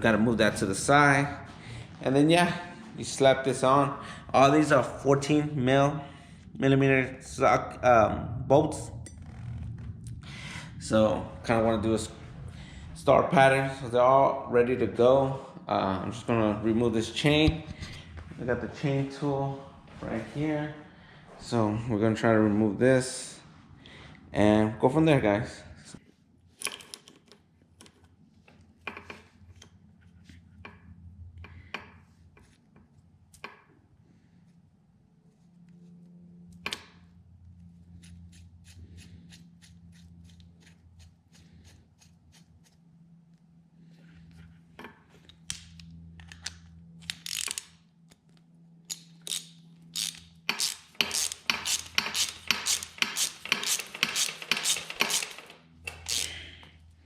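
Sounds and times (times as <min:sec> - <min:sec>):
ratchet wrench clicking: 0:46.2 - 0:47.8, 0:48.9 - 0:56.4.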